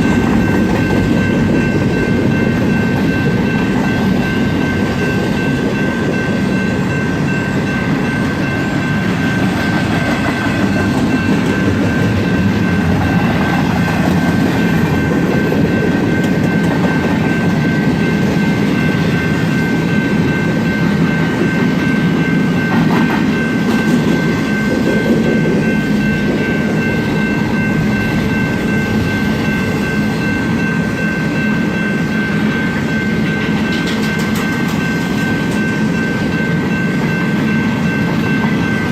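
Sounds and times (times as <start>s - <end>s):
freight train wheels rumbling: 0.0s - 38.9s
high-pitched ring: 0.0s - 38.9s
wheels clickety-clack: 9.3s - 18.9s, 22.6s - 26.8s, 33.3s - 35.7s.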